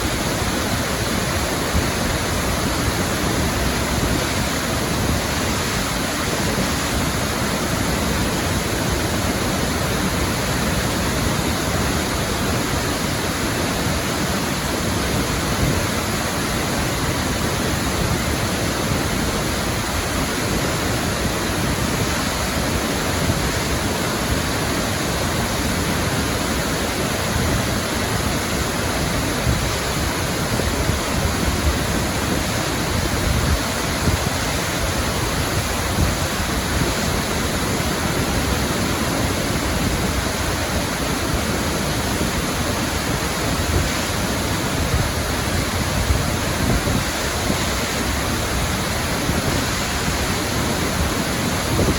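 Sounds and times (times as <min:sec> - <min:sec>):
waterfall rushing: 0:00.0 - 0:51.9.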